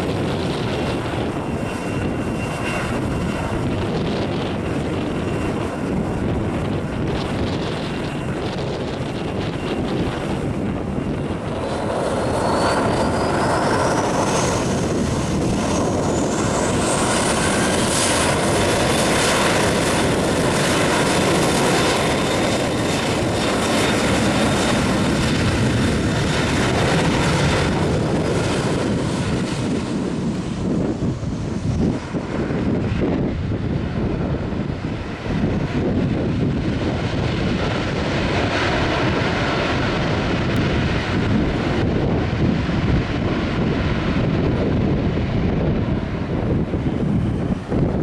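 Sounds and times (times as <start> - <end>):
jet engines spooling up: 0.0 - 48.0
wind noise on microphone: 0.0 - 48.0.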